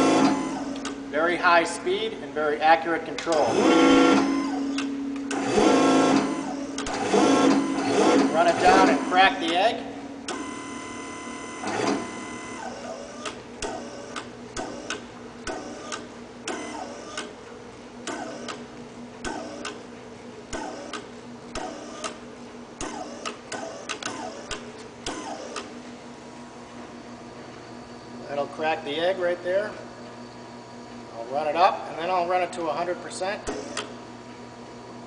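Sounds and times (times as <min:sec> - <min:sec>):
pump motor whine: 0:00.0 - 0:17.4, 0:18.0 - 0:19.9, 0:20.5 - 0:25.9, 0:33.1 - 0:35.0
steady hum: 0:00.0 - 0:35.0.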